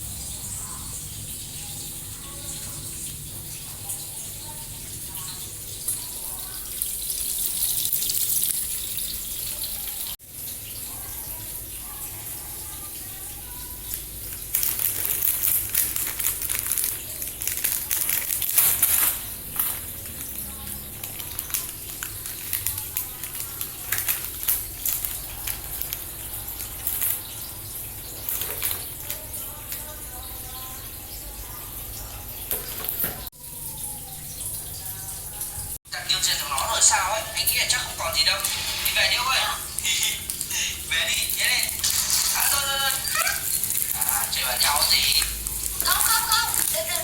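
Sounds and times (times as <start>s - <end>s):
water running and splashing: 0.0s - 47.0s
faint voices: 28.6s - 47.0s.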